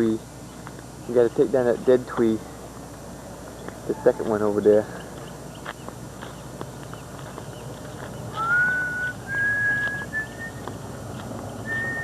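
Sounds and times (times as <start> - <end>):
person whistling a slow tune: 8.4 - 10.6, 11.7 - 12.0.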